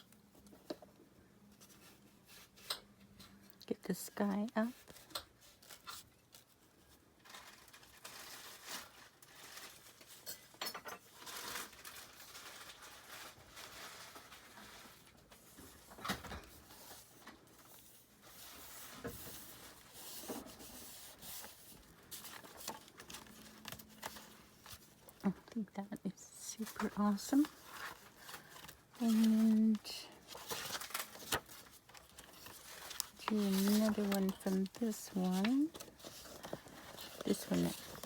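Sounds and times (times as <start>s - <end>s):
paper rustling and crinkling: 1.5s - 3.4s, 4.4s - 25.6s, 26.2s - 38.0s.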